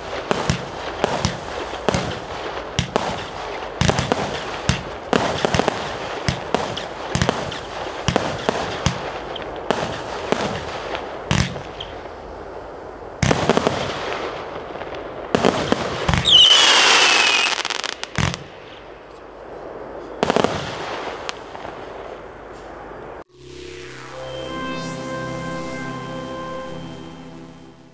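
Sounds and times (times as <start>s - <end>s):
firework shots and bursts: 0.0s - 12.6s, 13.2s - 18.8s, 20.2s - 22.2s
firework crackling: 0.0s - 27.8s
firework hissing and falling whistle: 16.1s - 18.0s.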